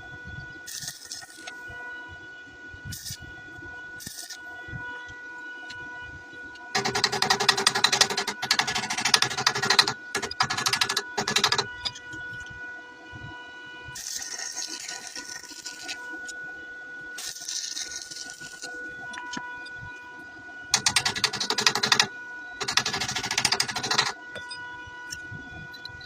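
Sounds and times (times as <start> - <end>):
faint steady whine: 0.0 - 26.0
welding arc crackling: 0.7 - 1.4, 14.0 - 16.0, 17.2 - 18.7.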